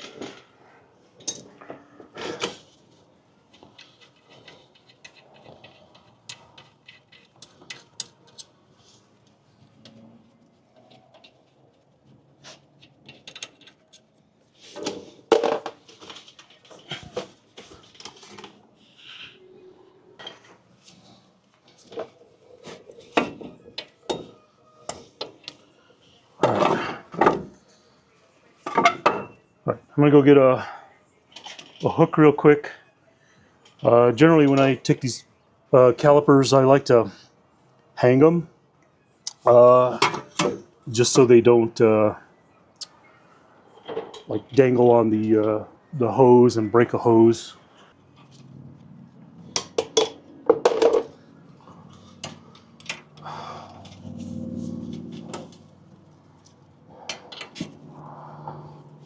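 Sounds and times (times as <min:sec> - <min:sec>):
metal tools clinking: 0:01.2 - 0:01.7
metal tools clinking and knocking: 0:01.2 - 0:01.7, 0:03.5 - 0:08.6, 0:12.8 - 0:14.2, 0:23.0 - 0:25.6, 0:28.6 - 0:29.4.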